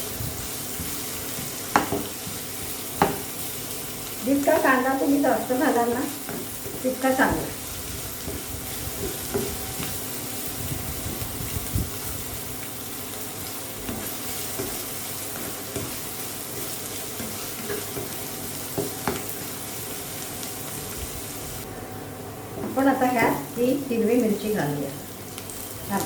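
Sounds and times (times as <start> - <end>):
onions sizzling in oil: 0.0 - 26.0
utensil knocking on pan: 1.7 - 2.1.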